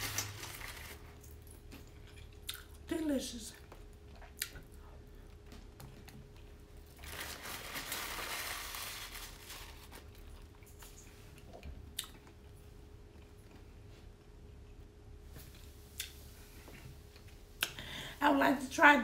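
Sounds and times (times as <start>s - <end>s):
crinkling rustle: 0.0s - 2.0s, 6.9s - 11.2s.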